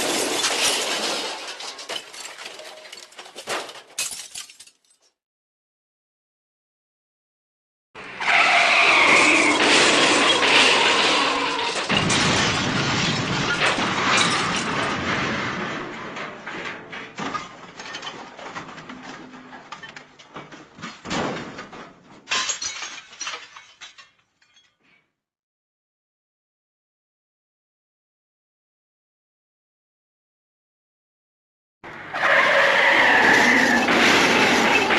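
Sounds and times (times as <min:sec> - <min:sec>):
glass shattering: 0:00.0 - 0:05.0, 0:09.5 - 0:18.4, 0:22.3 - 0:25.0
debris clattering and tinkling: 0:00.0 - 0:05.1, 0:09.8 - 0:21.0, 0:22.3 - 0:25.0
loud crash smash: 0:09.5 - 0:17.2, 0:33.7 - 0:34.9.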